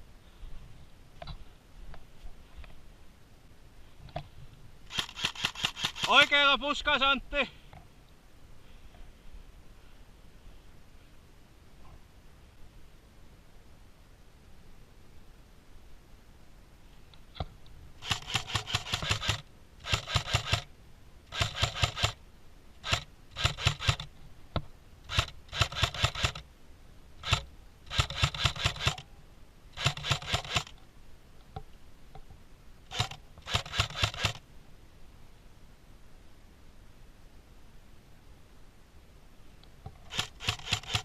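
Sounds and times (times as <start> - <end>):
airsoft gun firing bursts: 4.9 - 6.3, 18.0 - 20.7, 21.3 - 22.2, 22.8 - 24.1, 25.1 - 26.4, 27.2 - 29.0, 29.8 - 30.8, 32.9 - 34.4, 40.1 - 41.0.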